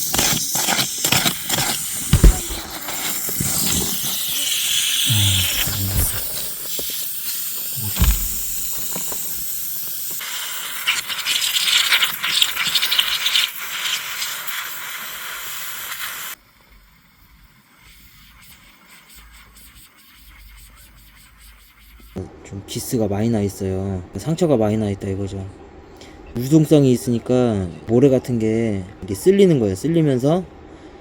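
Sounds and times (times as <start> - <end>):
water hissing from leaking pipe: 0.0 - 22.1
dull knocks: 7.9 - 9.0.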